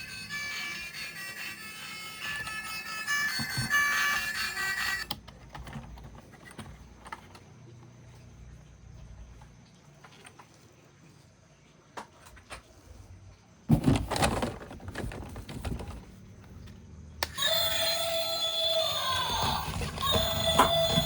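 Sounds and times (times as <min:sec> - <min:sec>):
music with held tones: 0:00.0 - 0:05.2.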